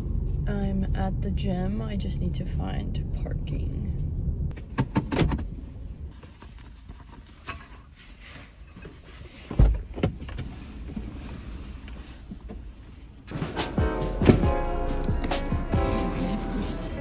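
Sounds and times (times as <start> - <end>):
engine and road rumble: 0.0 - 17.0
heavy thump: 13.3 - 14.6.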